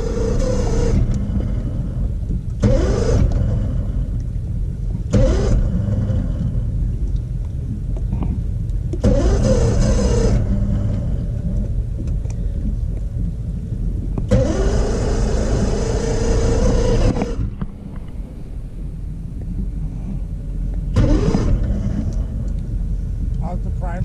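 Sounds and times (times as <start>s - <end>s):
engine starter cranking: 0.0s - 4.2s, 5.0s - 6.6s, 8.9s - 12.7s, 14.2s - 17.7s, 20.9s - 22.9s
low engine rumble: 0.0s - 24.0s.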